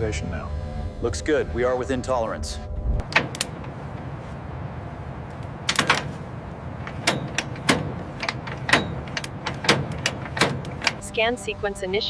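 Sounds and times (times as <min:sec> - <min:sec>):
low hum of workshop machinery: 0:00.0 - 0:12.0
sharp clicks and knocks: 0:05.4 - 0:06.2, 0:06.8 - 0:11.0.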